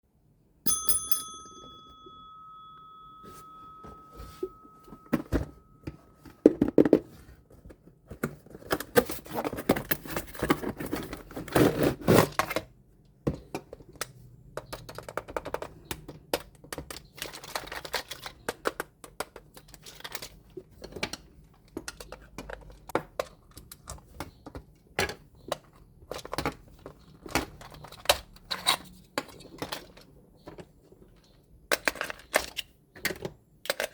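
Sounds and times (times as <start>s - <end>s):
ringing tone: 0.7s - 6.4s
plastic toy parts clicking: 31.7s - 33.9s.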